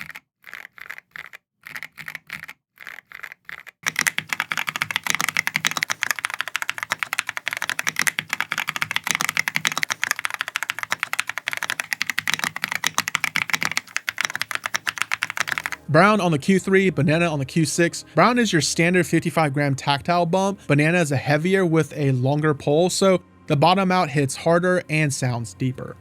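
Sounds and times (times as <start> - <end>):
mechanical keyboard typing: 0.0 - 15.8.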